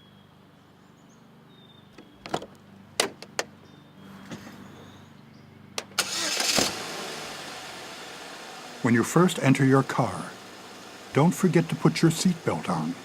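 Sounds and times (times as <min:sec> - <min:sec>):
car door clicks and knocks: 0:02.2 - 0:03.5.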